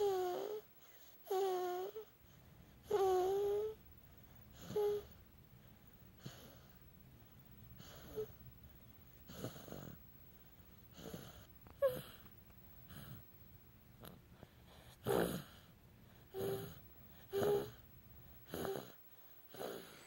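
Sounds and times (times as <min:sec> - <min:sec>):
baby snoring breaths: 0:00.0 - 0:03.8, 0:04.4 - 0:05.2, 0:06.2 - 0:06.8, 0:07.7 - 0:08.4, 0:09.2 - 0:10.0, 0:10.8 - 0:13.2, 0:14.0 - 0:17.8, 0:18.4 - 0:20.0.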